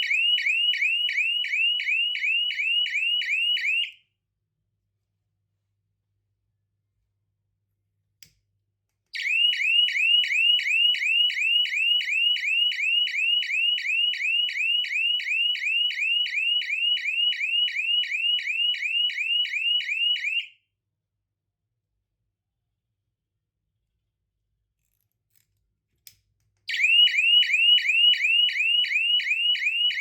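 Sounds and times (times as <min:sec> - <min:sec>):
electronic alarm siren whoops: 0:00.0 - 0:03.9, 0:09.2 - 0:20.5, 0:26.7 - 0:30.0.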